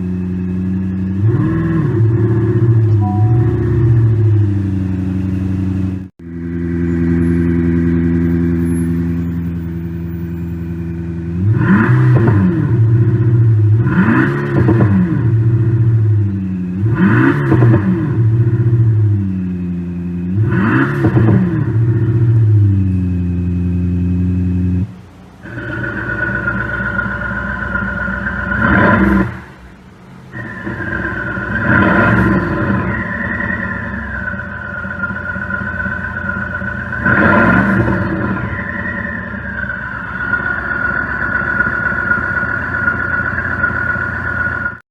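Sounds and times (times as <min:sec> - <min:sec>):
synthetic car engine revving: 0:10.8 - 0:44.8.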